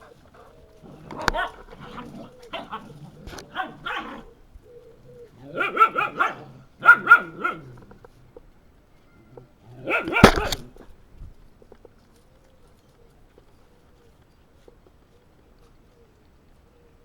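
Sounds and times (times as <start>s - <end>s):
sharp click: 10.1s - 10.7s.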